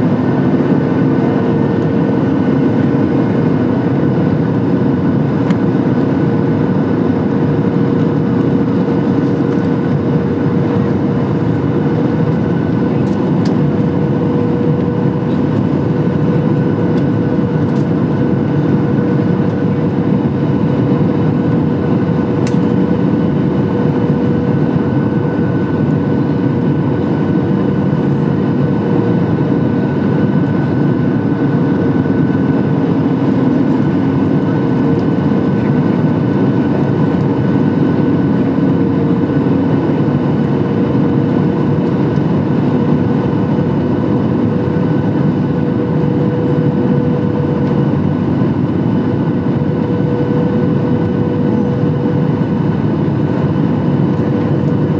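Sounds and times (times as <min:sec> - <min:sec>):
airplane cabin roar: 0:00.0 - 0:54.9
jet engine whine: 0:00.0 - 0:54.9.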